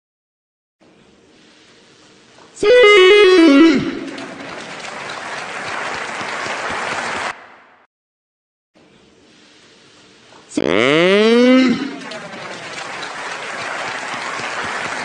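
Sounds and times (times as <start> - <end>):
loud wavering pitched cry: 2.6 - 4.5, 10.6 - 12.1
applause and crowd noise: 3.6 - 7.8, 11.8 - 15.0.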